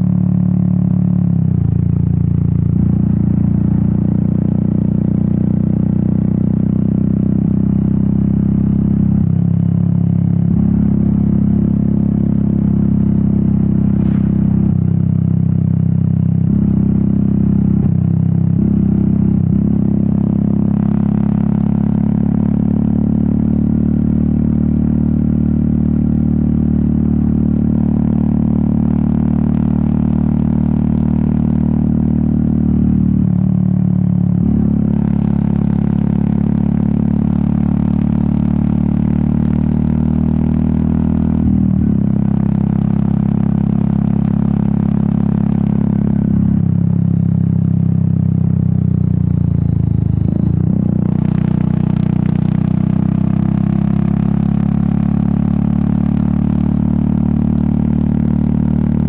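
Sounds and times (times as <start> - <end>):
motorcycle engine and exhaust running: 0.0 - 59.0.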